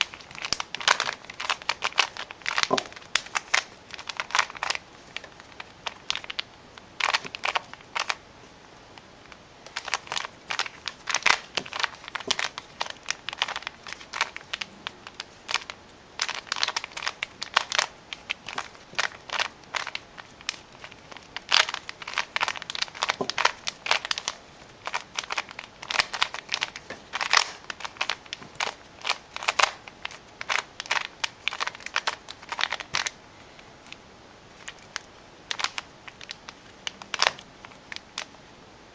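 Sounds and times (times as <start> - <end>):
plastic puzzle cube clicking: 9.7 - 33.2, 34.6 - 38.3.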